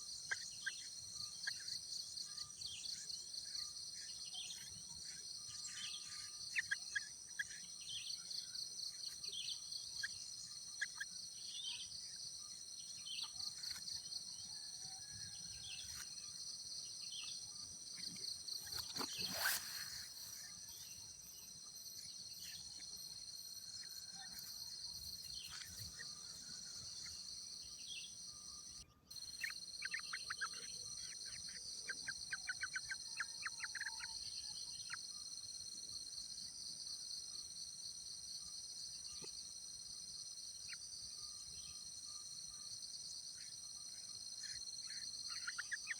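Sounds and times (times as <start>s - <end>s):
quick bird chirps: 18.0s - 27.2s.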